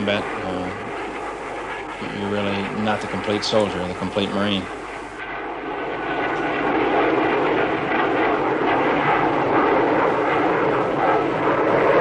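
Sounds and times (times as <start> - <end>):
jet engines rushing: 0.0 - 12.0.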